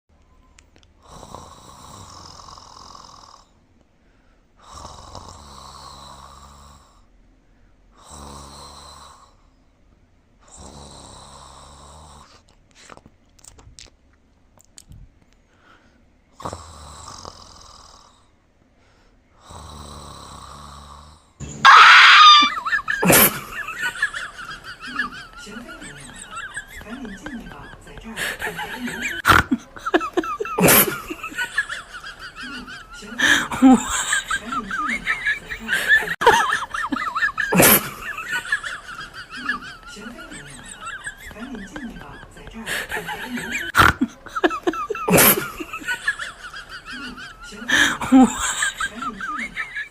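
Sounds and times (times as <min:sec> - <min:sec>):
cat snoring: 0:01.0 - 0:03.6, 0:04.6 - 0:07.1, 0:08.0 - 0:09.4, 0:10.4 - 0:12.4, 0:16.4 - 0:18.3, 0:19.4 - 0:21.4.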